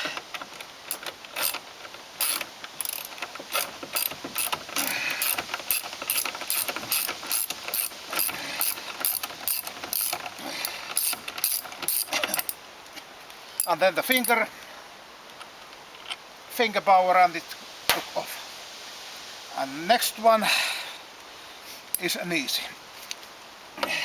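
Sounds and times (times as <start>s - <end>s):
ratchet wrench clicking: 0.9s - 10.3s, 10.9s - 12.6s.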